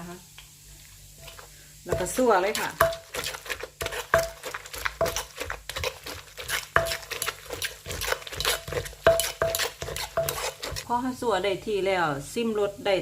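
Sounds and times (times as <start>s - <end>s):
stirring and scraping: 1.2s - 11.0s
utensil knocking against mortar: 8.7s - 10.8s.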